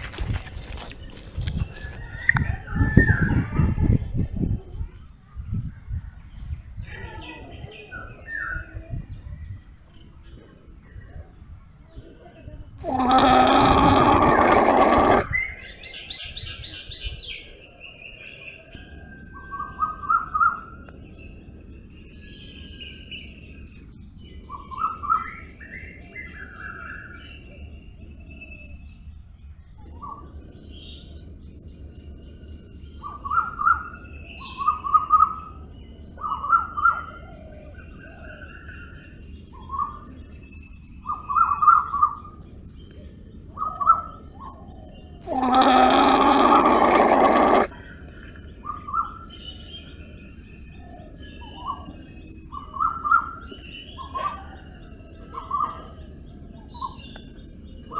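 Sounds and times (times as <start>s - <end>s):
steady outdoor hiss: 0.0s - 57.9s
higher bird calls: 12.8s - 15.7s, 43.6s - 49.1s
birds chirping: 12.8s - 25.2s, 40.4s - 57.9s.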